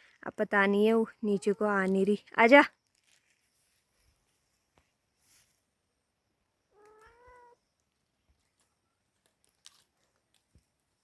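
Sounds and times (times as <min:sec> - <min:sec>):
cat meowing: 0:06.7 - 0:07.6.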